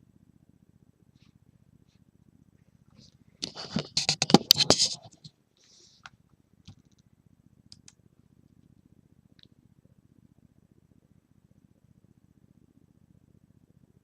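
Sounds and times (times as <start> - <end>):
trading cards crinkling and clicking: 3.4 - 5.3.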